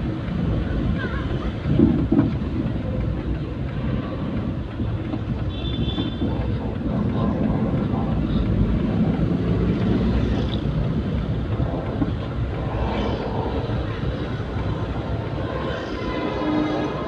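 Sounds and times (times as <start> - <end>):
engine and road noise: 0.0 - 17.0.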